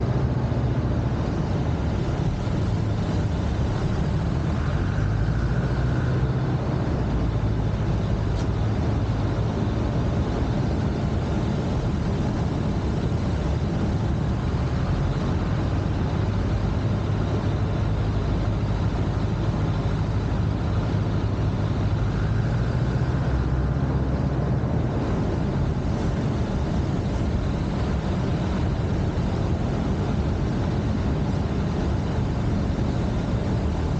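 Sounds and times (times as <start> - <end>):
small plane engine running: 0.0 - 33.9.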